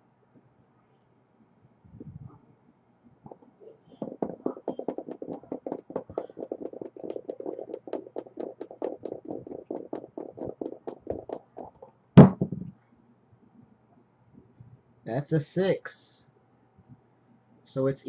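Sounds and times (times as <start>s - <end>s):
dice rattling: 4.0s - 11.8s.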